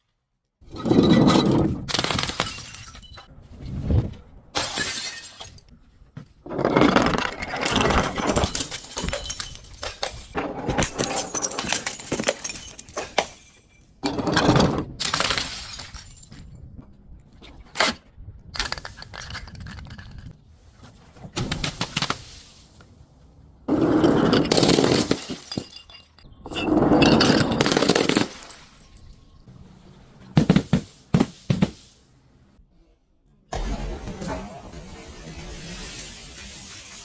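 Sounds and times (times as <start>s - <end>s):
glass bottles crushing and shattering: 0.6s - 3.3s, 4.6s - 5.7s, 6.5s - 16.6s, 23.7s - 29.5s.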